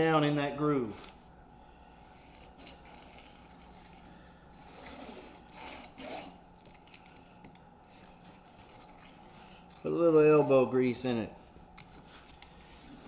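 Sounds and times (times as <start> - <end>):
rolling tool rubbing strokes: 2.0 - 6.4, 7.8 - 13.0.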